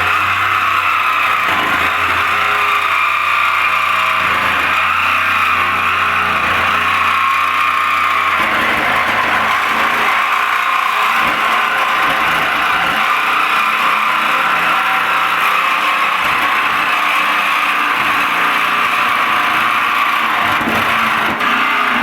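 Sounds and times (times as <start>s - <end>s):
jigsaw sawing through sheet steel: 0.0s - 22.0s.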